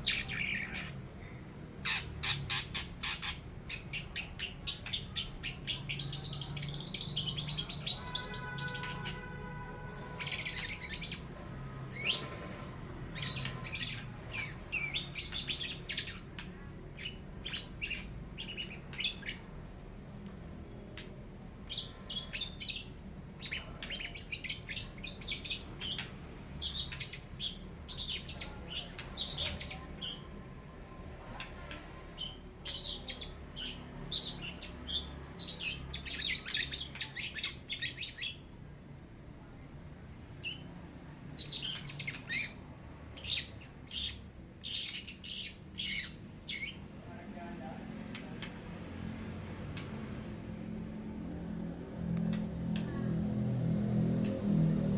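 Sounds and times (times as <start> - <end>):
bird chirps and squeaky notes: 1.8 - 9.3, 10.1 - 11.3, 13.1 - 16.3, 21.7 - 30.4, 41.4 - 42.6, 43.2 - 46.8.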